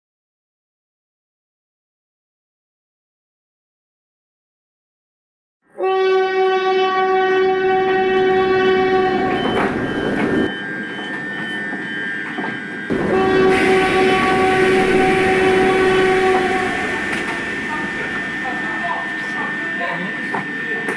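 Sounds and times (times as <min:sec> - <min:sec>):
train horn blast: 0:05.7 - 0:10.5, 0:12.9 - 0:19.9
moving train rumble: 0:06.6 - 0:20.9.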